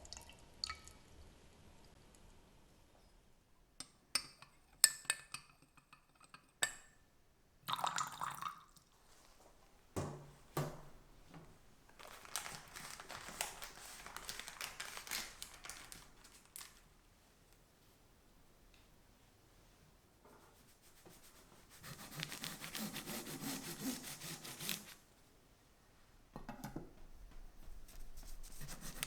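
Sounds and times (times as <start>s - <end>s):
soft knocks: 10.0s - 11.5s.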